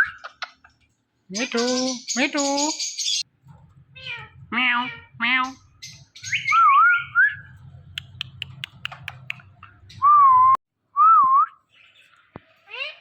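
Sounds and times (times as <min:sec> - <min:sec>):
parrot whistled calls: 0:06.2 - 0:07.5
parrot clicks and chirps: 0:07.9 - 0:09.6.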